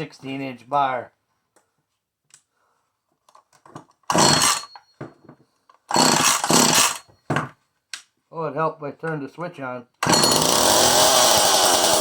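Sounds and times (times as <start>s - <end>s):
recoil starter rope whirring: 4.1s - 4.7s, 5.9s - 7.0s, 10.0s - 12.0s.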